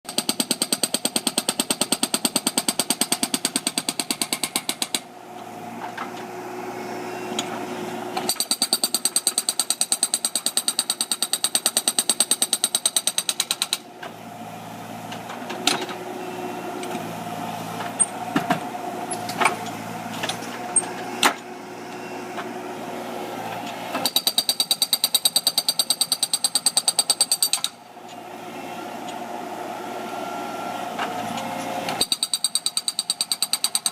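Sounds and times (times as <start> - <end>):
hydraulic breaker hammering concrete: 24.0 - 27.8, 32.0 - 33.9.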